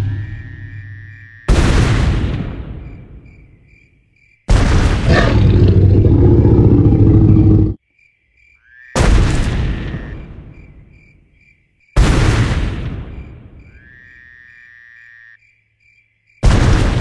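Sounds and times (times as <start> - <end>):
crickets chirping: 0.0 - 1.6, 2.7 - 4.5, 5.9 - 12.0, 13.0 - 16.4
loud booms: 1.5 - 3.4, 4.5 - 6.5, 9.0 - 10.6, 12.0 - 13.6, 16.4 - 17.0.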